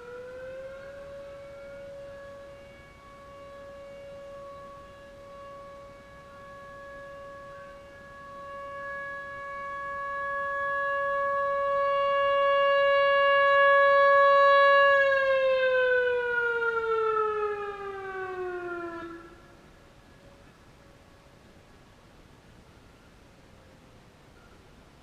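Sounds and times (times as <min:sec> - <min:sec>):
electronic rotating siren: 0:00.0 - 0:19.5.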